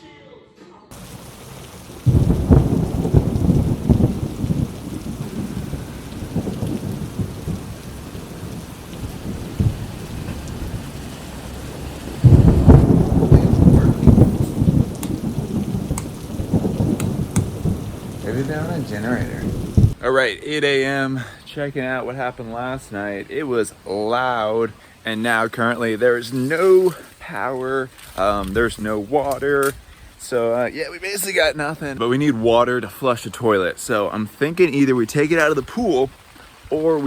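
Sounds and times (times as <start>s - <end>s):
low rumbling surges: 0.9s - 20.4s
heavy rain hiss: 0.9s - 37.0s.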